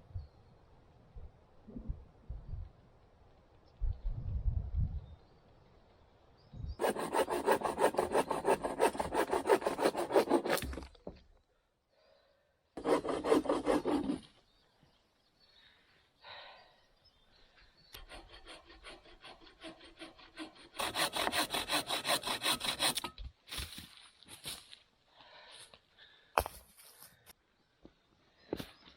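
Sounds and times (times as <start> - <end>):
hand saw cutting wood: 6.8 - 11.1, 12.8 - 14.3, 18.0 - 23.2.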